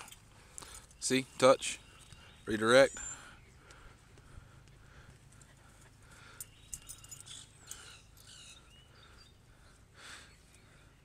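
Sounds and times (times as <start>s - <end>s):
dogs panting: 3.4s - 7.9s.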